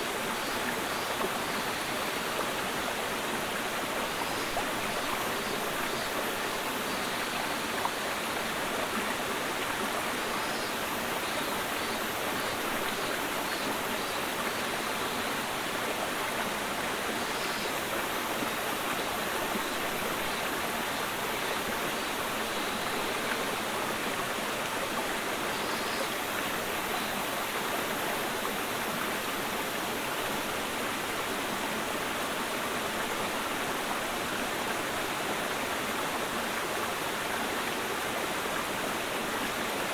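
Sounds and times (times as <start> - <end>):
mountain stream babbling: 0.0 - 39.9.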